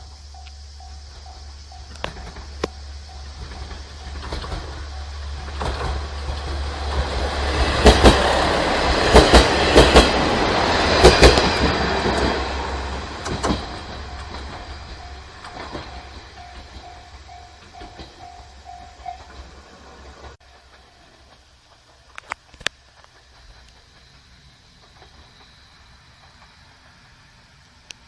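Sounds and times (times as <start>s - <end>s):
train rumble: 0.0s - 28.0s
wheel clacks over rail joints: 1.2s - 27.2s
level crossing warning bell: 13.9s - 19.6s.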